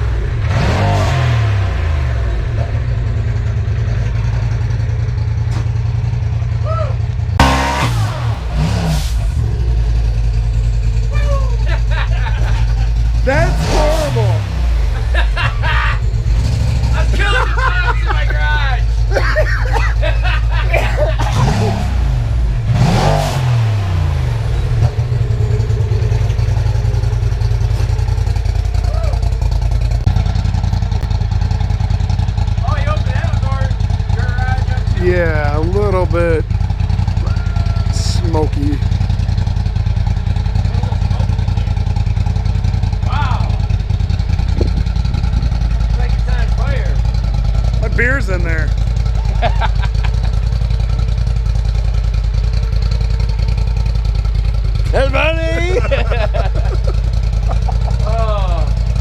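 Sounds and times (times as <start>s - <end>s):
engine revving hard: 0.0s - 2.7s, 7.4s - 10.3s, 11.9s - 18.4s, 19.0s - 29.1s
engine running hard: 0.0s - 59.0s.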